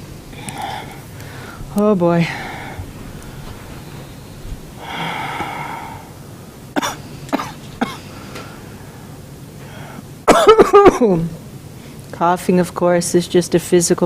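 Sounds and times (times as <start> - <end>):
person exhaling: 0.3 - 3.5, 4.8 - 6.2, 9.6 - 10.0
person coughing: 6.8 - 8.1, 10.3 - 11.3.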